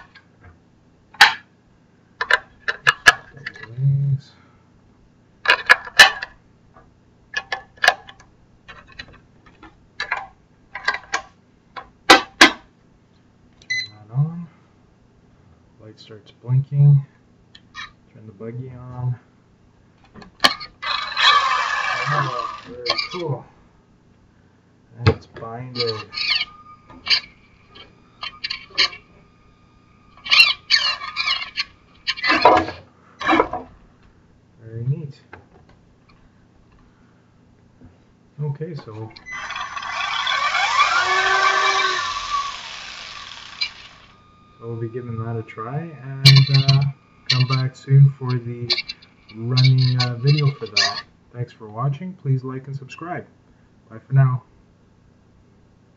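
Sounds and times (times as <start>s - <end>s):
electric motor whining: 20.8s - 23.2s, 25.7s - 32.7s, 39.2s - 50.9s.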